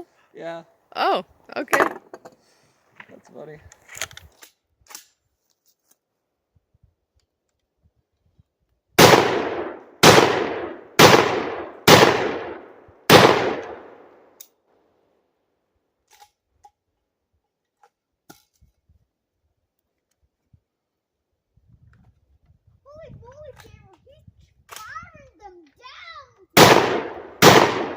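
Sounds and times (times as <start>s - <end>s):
shotgun shots echoing: 9.0s - 14.2s, 26.6s - 27.9s.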